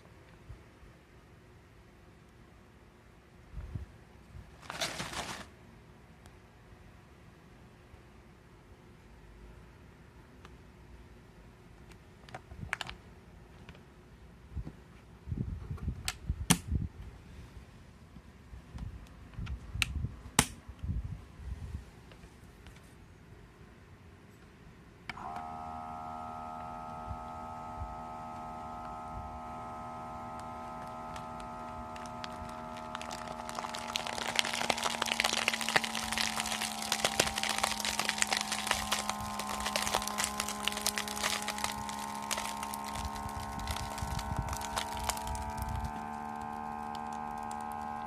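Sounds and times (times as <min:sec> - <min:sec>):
plastic bag crackling: 0:04.5 - 0:05.5, 0:30.3 - 0:48.0
vacuum pump humming: 0:25.1 - 0:48.0.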